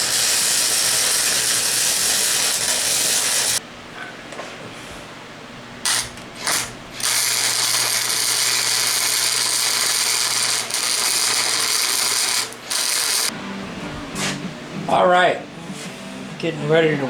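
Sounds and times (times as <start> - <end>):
arc welding crackle: 0.0 - 3.6, 5.8 - 13.3.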